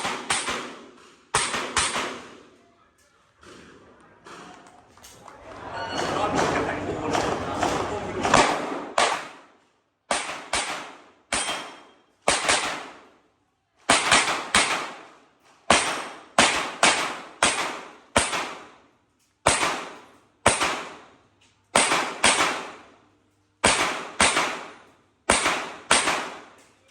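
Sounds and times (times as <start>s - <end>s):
handgun shots with echo: 0.0s - 2.5s, 7.1s - 9.5s, 10.1s - 13.0s, 13.9s - 15.1s, 15.7s - 18.7s, 19.5s - 21.0s, 21.8s - 22.9s, 23.6s - 26.9s.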